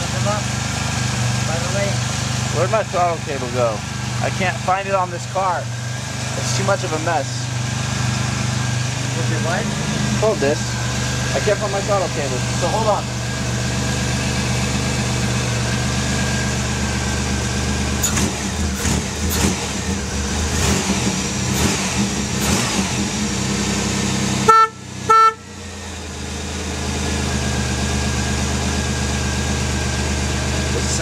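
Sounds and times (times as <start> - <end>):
car engine revving: 0.0 - 31.0
car horn honks: 24.4 - 25.6.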